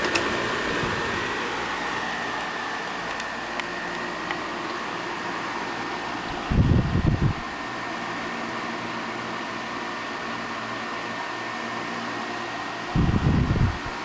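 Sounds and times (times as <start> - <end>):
table fan whirring: 0.0 - 14.0
wind buffeting microphone: 6.3 - 7.4, 13.0 - 13.9.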